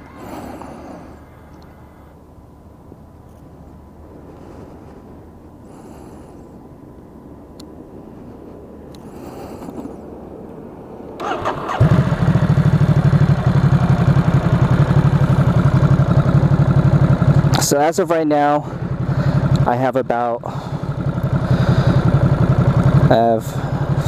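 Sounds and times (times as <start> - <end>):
motorcycle engine idling: 11.2 - 24.0.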